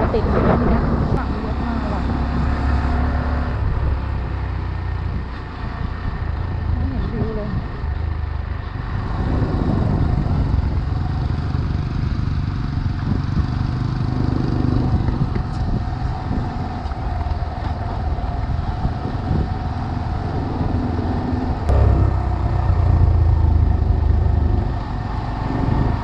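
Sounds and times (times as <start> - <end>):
wind and road noise: 0.0 - 26.0
motorcycle engine running: 3.6 - 16.7, 18.6 - 26.0.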